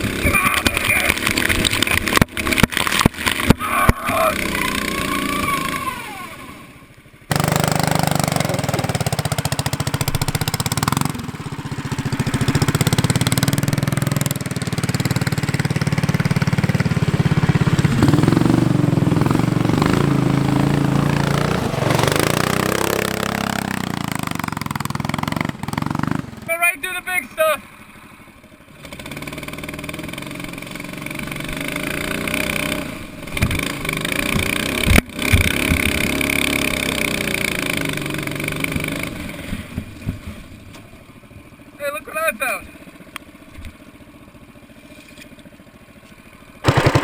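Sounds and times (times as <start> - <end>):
small engine running: 7.3 - 26.6, 46.6 - 47.0.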